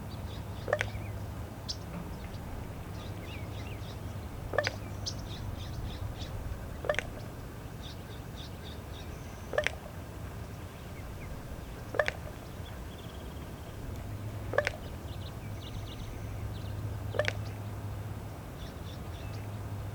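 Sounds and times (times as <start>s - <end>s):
raven popping call: 0.7s - 1.0s, 4.4s - 5.4s, 6.8s - 7.4s, 9.4s - 10.0s, 11.2s - 16.3s, 17.1s - 17.6s.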